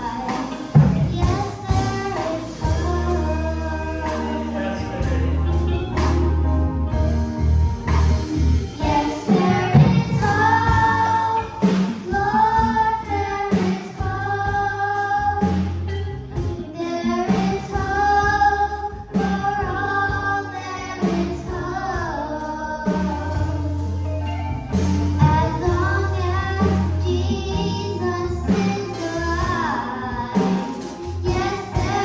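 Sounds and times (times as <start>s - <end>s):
drum hits: 0.0s - 16.7s, 23.0s - 32.0s
bass line: 0.0s - 32.0s
children's choir singing: 8.6s - 15.7s, 25.2s - 32.0s.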